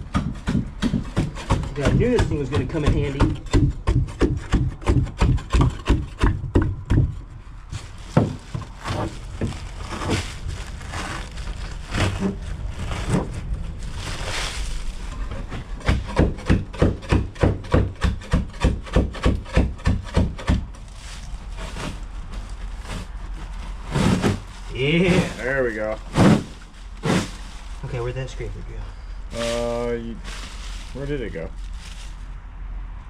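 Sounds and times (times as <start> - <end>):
scraper striking rotten wood: 0.0 - 7.2, 8.0 - 10.3, 11.9 - 13.4, 14.2 - 27.5.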